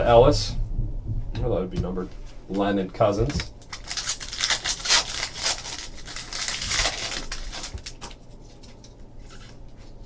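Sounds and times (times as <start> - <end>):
cards and foil wrapper rustling: 3.2 - 9.6.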